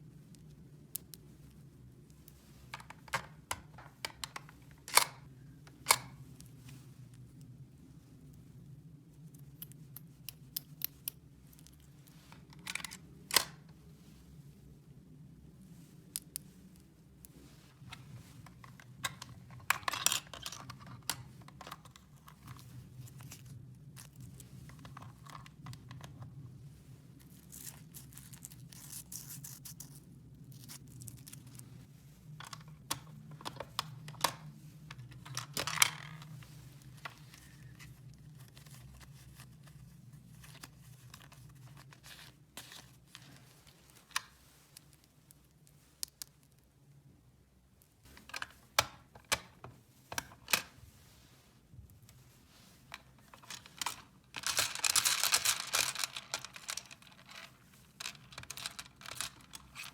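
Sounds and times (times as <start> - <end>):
plastic pieces clicking: 53.4 - 59.9.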